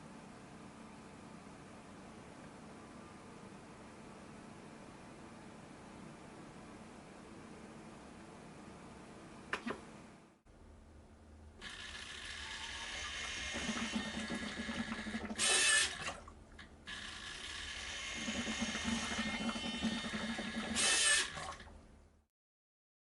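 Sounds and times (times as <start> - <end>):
small electric motor whining: 11.6 - 16.0, 16.9 - 21.4.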